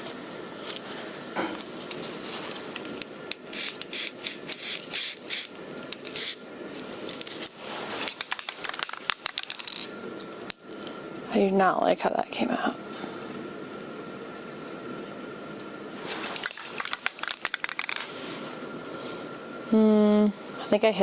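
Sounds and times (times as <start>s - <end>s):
spray paint can hissing: 3.5s - 5.5s, 6.1s - 6.4s.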